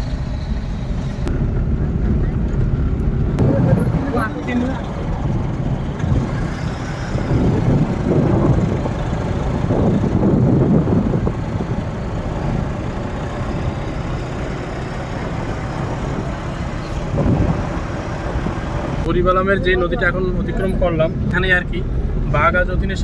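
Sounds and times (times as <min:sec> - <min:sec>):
car engine and tyre rumble: 0:00.0 - 0:23.0.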